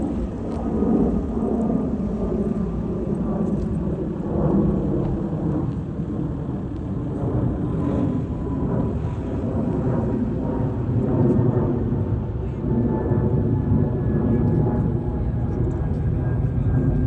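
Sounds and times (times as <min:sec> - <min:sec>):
jet airliner flying over: 0:00.0 - 0:17.0.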